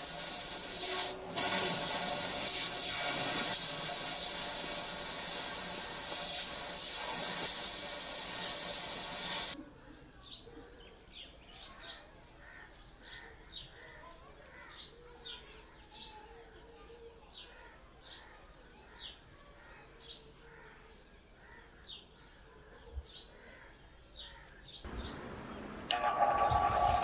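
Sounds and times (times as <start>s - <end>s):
steady hissing: 0.0s - 9.6s.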